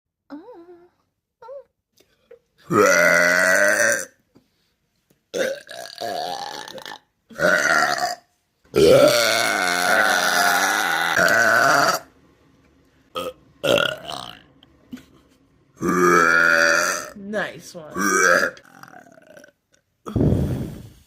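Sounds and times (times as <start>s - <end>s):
person belching: 2.7s - 4.2s, 5.3s - 12.1s, 13.2s - 14.5s, 15.8s - 17.2s, 18.0s - 20.4s.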